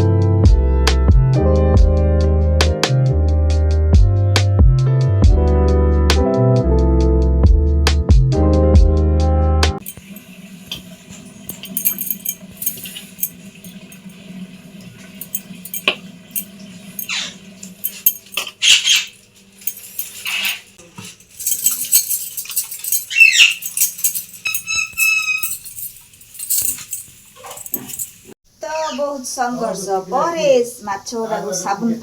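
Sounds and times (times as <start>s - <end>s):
scraping and rustling handling noises: 11.5s - 14.1s, 17.7s - 28.3s
high-pitched animal cry: 17.0s - 17.4s, 18.6s - 19.2s, 23.0s - 23.8s, 24.4s - 25.7s.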